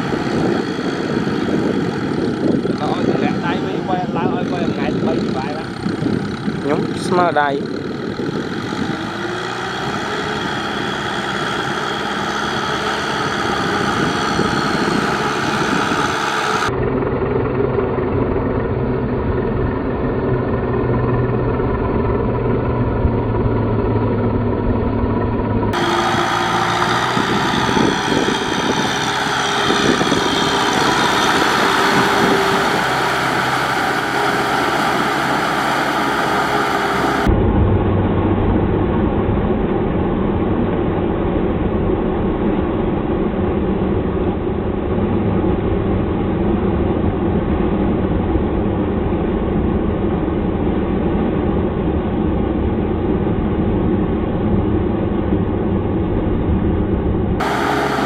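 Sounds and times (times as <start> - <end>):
tractor engine under load: 0.0 - 37.3, 57.4 - 58.0.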